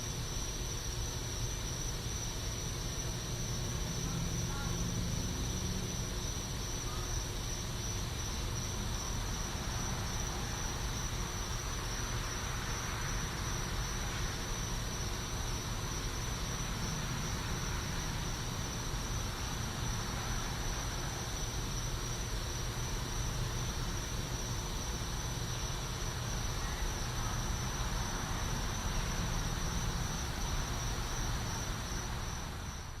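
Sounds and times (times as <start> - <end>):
crickets trilling: 0.0 - 33.0.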